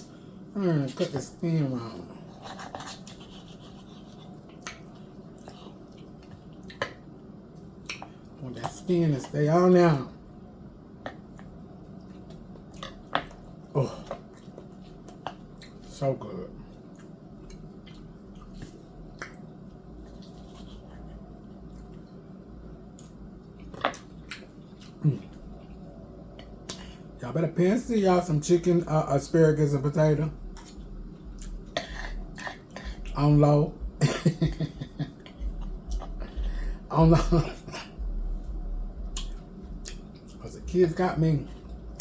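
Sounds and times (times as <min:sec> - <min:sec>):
steady low hum: 0:00.0 - 0:42.0
wet eating clicks and smacks: 0:02.4 - 0:09.4, 0:11.0 - 0:15.9, 0:16.8 - 0:22.2, 0:22.9 - 0:25.8, 0:30.4 - 0:33.2, 0:34.6 - 0:36.4, 0:39.1 - 0:40.4.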